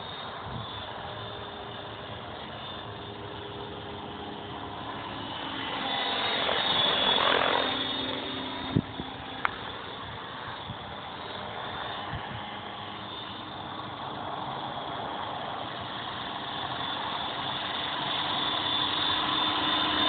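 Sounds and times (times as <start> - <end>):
model helicopter rotor whine: 0.0 - 20.0.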